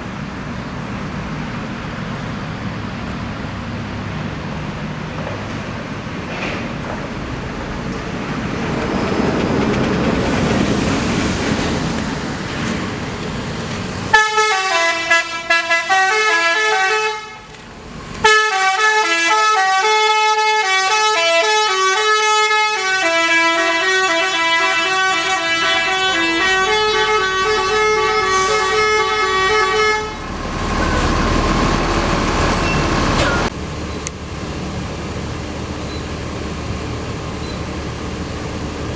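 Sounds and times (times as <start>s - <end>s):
coach engine rumble: 26.6s - 33.6s.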